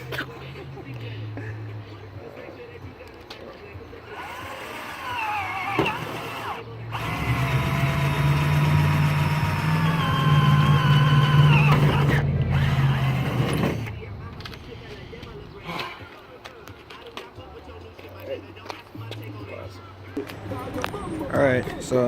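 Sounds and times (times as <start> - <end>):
power drill whining: 4.0 - 13.9.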